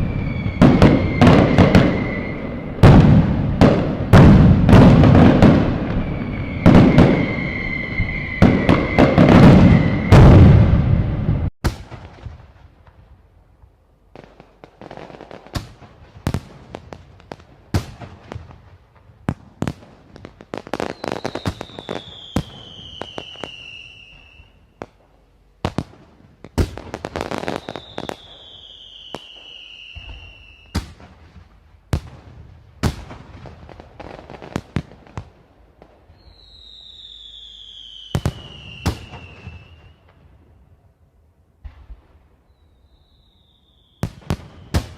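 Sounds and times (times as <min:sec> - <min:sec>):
firecrackers bursting: 0:00.0 - 0:12.8, 0:14.2 - 0:40.2, 0:42.5 - 0:44.9
whistling fireworks: 0:00.0 - 0:12.9, 0:14.2 - 0:41.0, 0:41.6 - 0:44.9.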